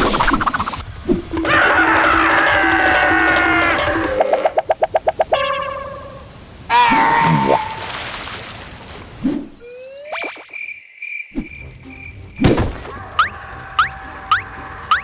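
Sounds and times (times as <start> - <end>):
rising swoops: 0.0 - 5.3.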